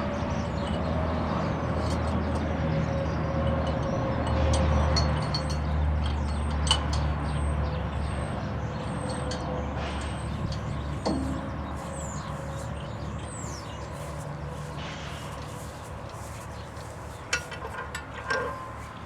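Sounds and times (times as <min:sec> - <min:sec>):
tractor diesel engine idling: 0:05.1 - 0:19.0.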